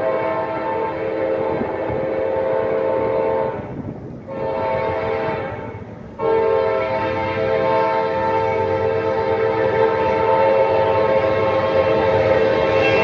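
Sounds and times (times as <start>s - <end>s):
locomotive air horn blasts: 0.0s - 13.0s
low rumble of passing train: 0.0s - 13.0s.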